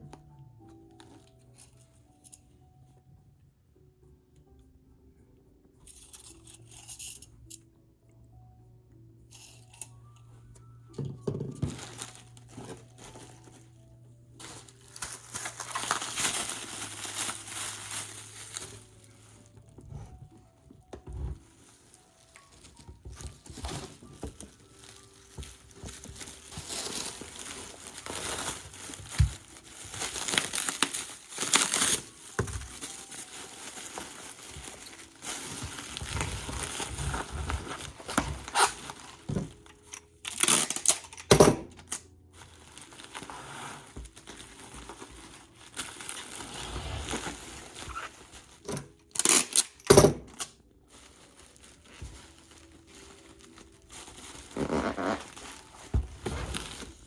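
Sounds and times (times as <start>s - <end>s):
packing material crinkling: 11.6s - 57.0s.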